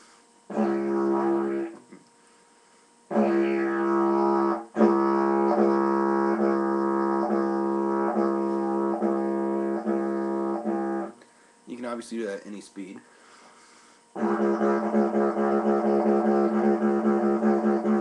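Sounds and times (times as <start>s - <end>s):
didgeridoo drone: 0.5s - 2.0s, 3.1s - 11.2s, 14.1s - 18.0s.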